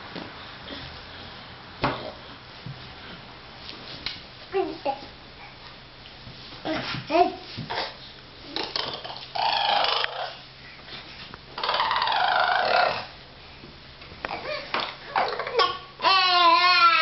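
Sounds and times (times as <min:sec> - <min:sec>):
babies vocalizing: 0:07.7 - 0:10.4, 0:11.6 - 0:13.2, 0:14.3 - 0:17.0.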